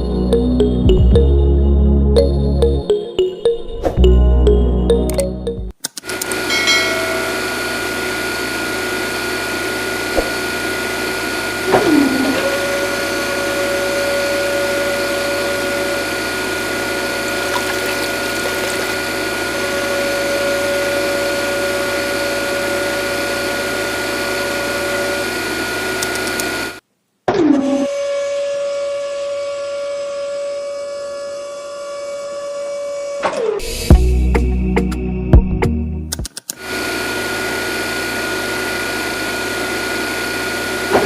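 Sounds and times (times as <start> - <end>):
small electric motor whining: 17.2 - 19.2.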